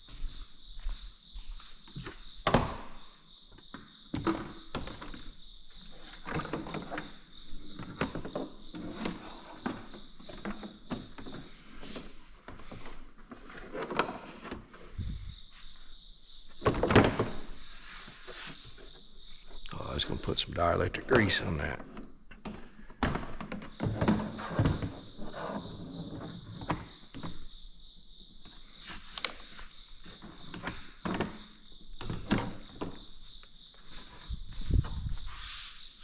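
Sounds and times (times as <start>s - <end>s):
plastic cover knocking and rattling: 7.7s - 11.4s, 16.6s - 17.5s, 22.3s - 25.0s.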